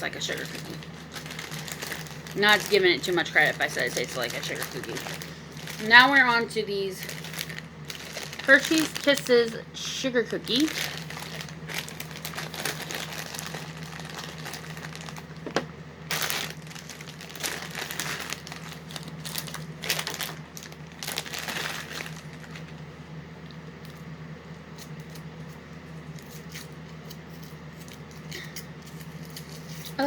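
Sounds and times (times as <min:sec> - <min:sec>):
candy wrapper crinkling and tearing: 0:00.0 - 0:15.4, 0:16.1 - 0:22.8.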